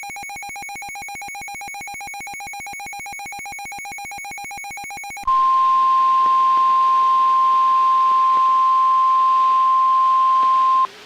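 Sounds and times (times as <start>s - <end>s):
rapidly pulsing electronic beep: 0.0s - 5.8s
steady alarm tone: 0.0s - 10.9s.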